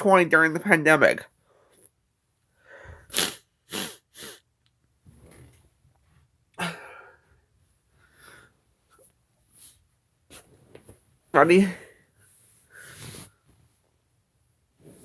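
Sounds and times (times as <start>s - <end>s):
person sniffing sharply: 3.1s - 4.4s, 12.8s - 13.4s
person gasping and breathing: 6.6s - 7.4s.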